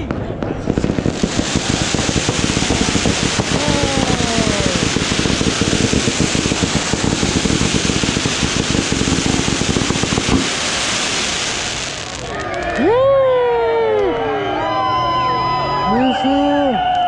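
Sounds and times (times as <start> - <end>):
firecrackers popping: 0.0 - 13.0.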